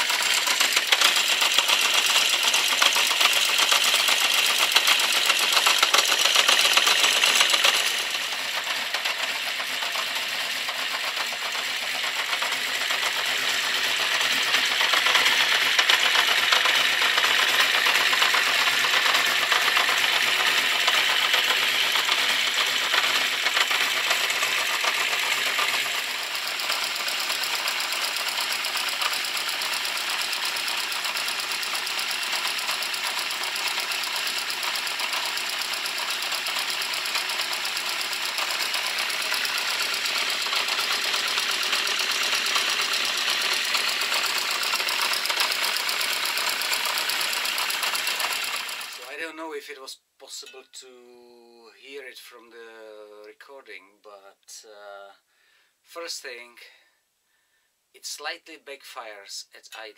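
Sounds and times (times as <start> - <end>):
motorcycle engine idling: 0.0 - 49.0
fast mechanical ticking: 0.0 - 49.2.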